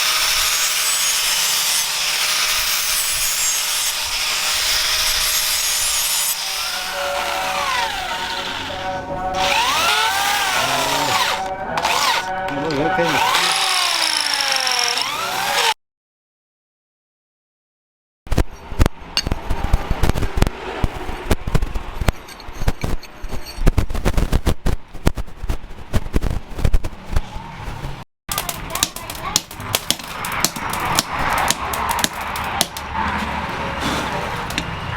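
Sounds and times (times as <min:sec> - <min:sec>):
power abrasive tool on steel: 0:00.0 - 0:15.8.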